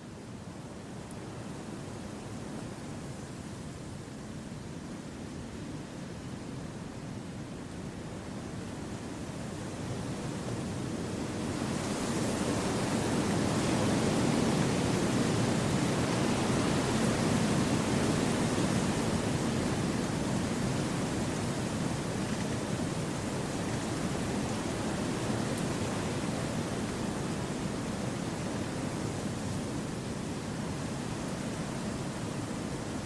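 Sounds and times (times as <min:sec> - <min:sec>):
wind blowing through trees: 0:08.4 - 0:33.0.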